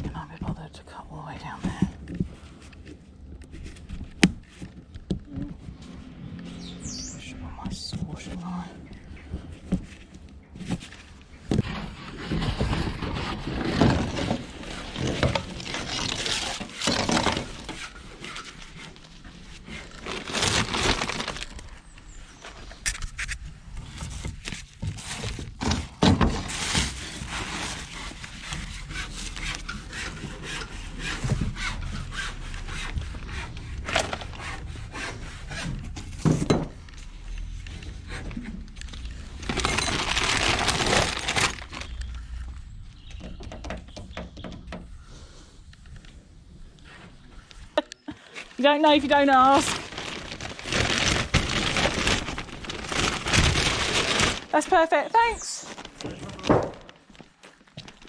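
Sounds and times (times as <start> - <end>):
debris scraping and knocking: 10.6 - 21.7, 23.0 - 42.5, 48.4 - 58.0
saw cutting: 27.9 - 36.0.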